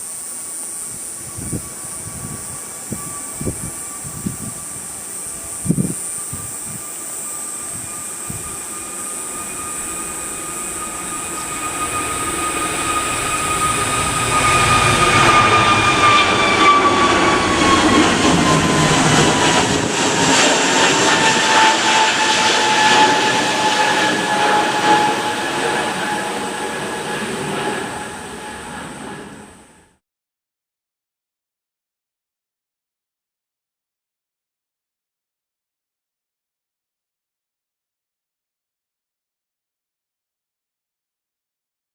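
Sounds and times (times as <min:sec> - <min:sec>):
jet engines roaring on takeoff: 0:00.4 - 0:30.0.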